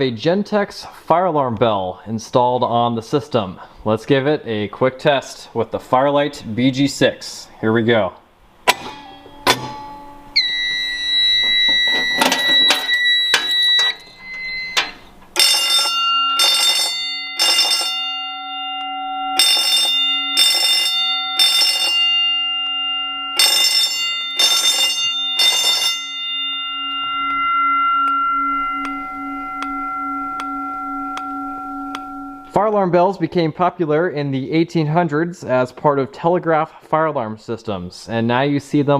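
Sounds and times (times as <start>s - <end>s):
fire alarm bell ringing: 8.9s - 33.0s
steady high tone: 8.9s - 33.9s
clicks: 28.8s - 29.0s, 31.2s - 32.6s.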